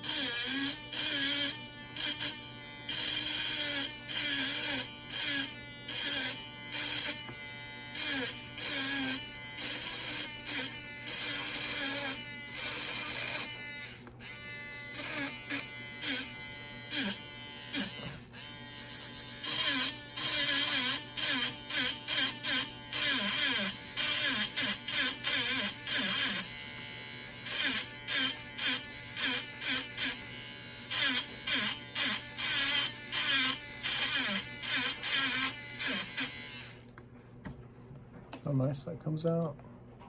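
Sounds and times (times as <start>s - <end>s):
engraving pen buzzing on metal: 0.0s - 36.9s.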